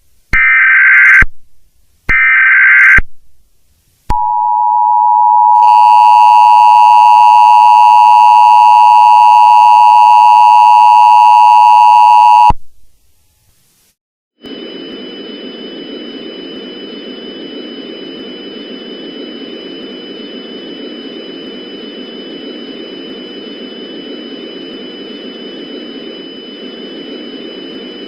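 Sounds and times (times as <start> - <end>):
static-like hiss: 12.6 - 28.0
faint high-pitched whines: 14.4 - 28.0.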